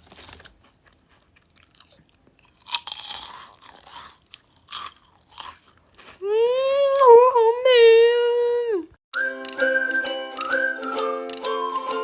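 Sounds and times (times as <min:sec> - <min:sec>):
crunchy snack being chewed: 0:00.0 - 0:06.2.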